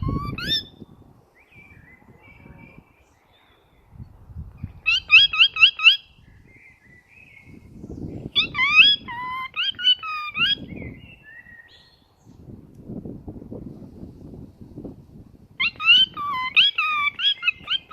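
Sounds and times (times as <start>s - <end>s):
bird-like chirping: 4.9s - 12.0s, 15.6s - 17.9s.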